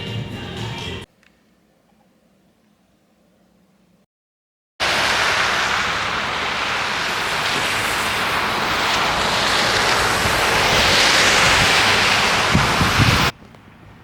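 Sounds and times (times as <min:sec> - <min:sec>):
loud steady rushing noise: 0:04.8 - 0:13.4.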